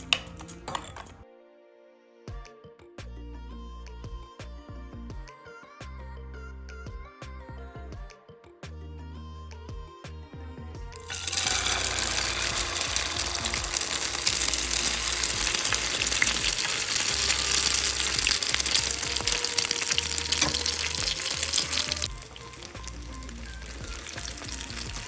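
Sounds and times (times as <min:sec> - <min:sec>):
egg frying in oil sizzling: 0:11.0 - 0:25.0.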